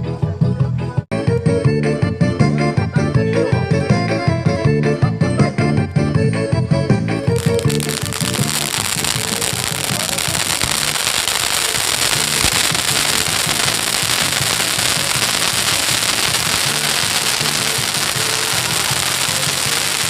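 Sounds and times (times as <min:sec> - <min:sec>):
music playing: 0:00.0 - 0:20.0
bonfire crackling: 0:07.3 - 0:20.0.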